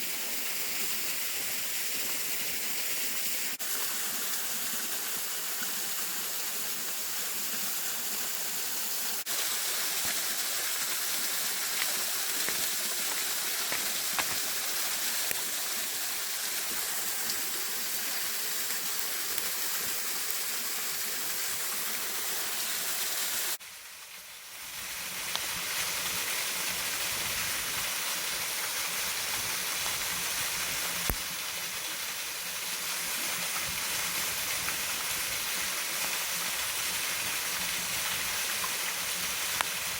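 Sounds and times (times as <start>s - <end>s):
waterfall rushing: 9.2s - 23.6s.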